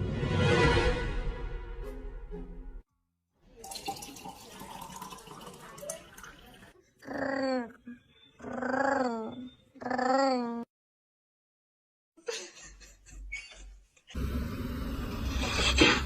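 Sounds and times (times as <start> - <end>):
running water: 3.6 - 6.8.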